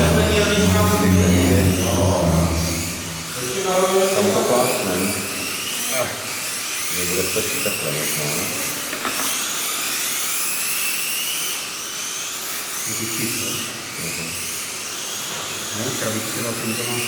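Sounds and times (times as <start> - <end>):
faint voices: 0.0 - 6.3
small electric motors whining: 0.0 - 17.0.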